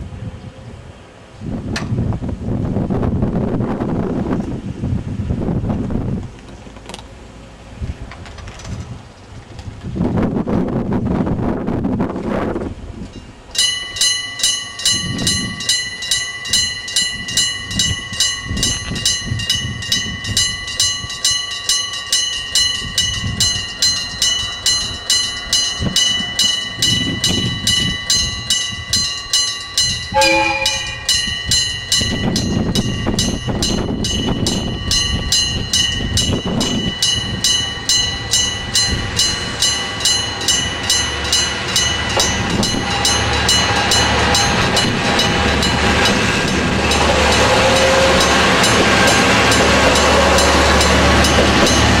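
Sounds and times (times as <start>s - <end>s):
low train rumble: 0.0s - 52.0s
level crossing bell ringing: 13.6s - 52.0s
train horn blast: 30.1s - 31.2s, 47.1s - 49.1s.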